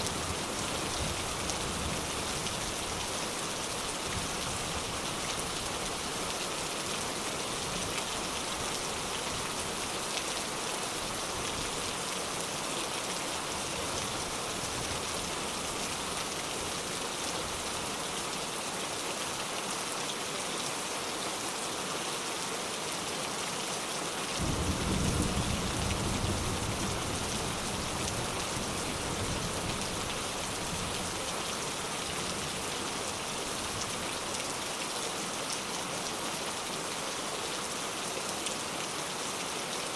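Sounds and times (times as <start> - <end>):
rain falling: 0.0 - 39.9
thunder rumbling: 24.4 - 27.4.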